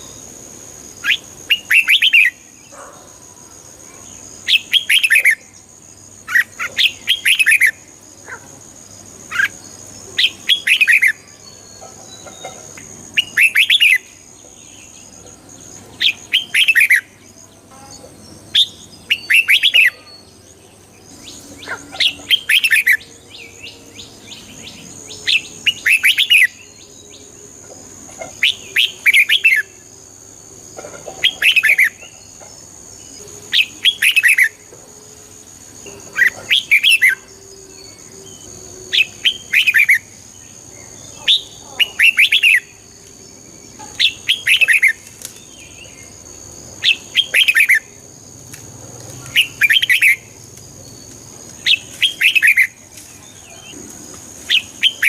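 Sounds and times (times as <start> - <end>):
bird singing whistled notes: 1.0 - 2.4, 4.5 - 5.4, 10.2 - 12.3, 13.2 - 14.2, 16.0 - 17.2, 18.5 - 20.4, 21.2 - 27.4, 36.2 - 40.2.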